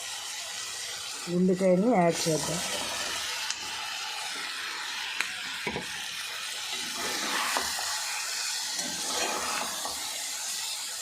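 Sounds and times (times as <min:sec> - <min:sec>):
food sizzling in a pan: 0:00.0 - 0:11.0.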